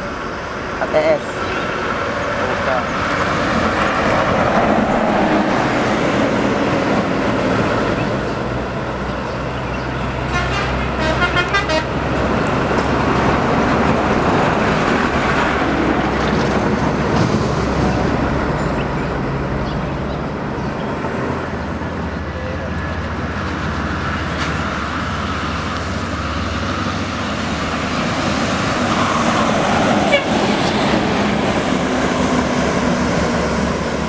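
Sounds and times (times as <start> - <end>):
bus engine passing: 0.0 - 34.0
highway traffic: 0.0 - 34.0
pulsing bus horn: 10.2 - 12.3, 29.0 - 30.8.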